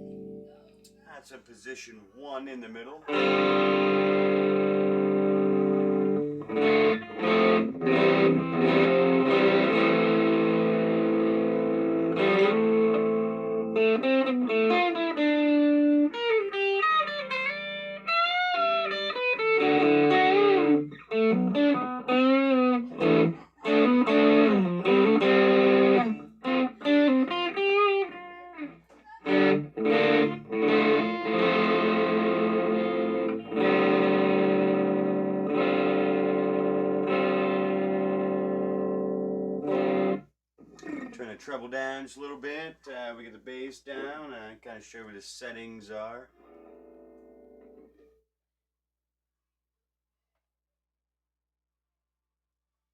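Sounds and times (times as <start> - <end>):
overdriven electric guitar: 3.1 - 40.2, 46.4 - 48.1.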